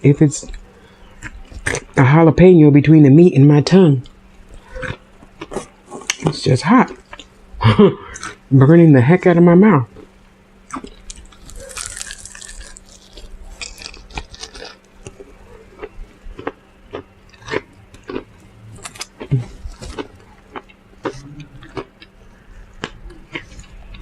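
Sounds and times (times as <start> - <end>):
wet chewing and lip-smacking: 4.0 - 6.3, 9.9 - 24.0.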